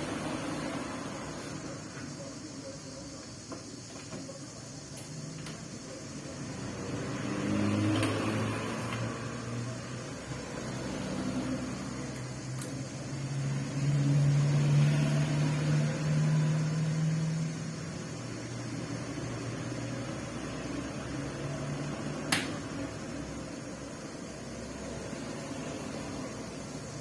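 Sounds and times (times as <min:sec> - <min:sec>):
electric fan motor hum: 0:00.0 - 0:27.0
sharp click: 0:22.3 - 0:22.6.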